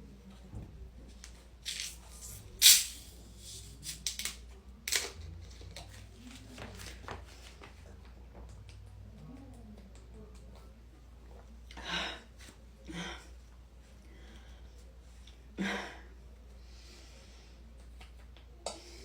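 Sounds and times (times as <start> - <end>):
rustling hissing noises: 1.7 - 4.2.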